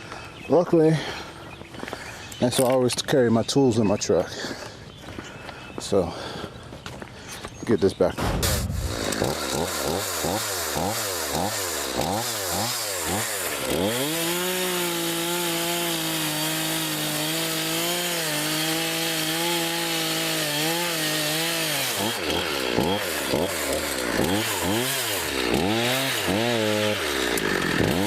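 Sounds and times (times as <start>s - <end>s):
chainsaw revving: 8.4s - 28.0s.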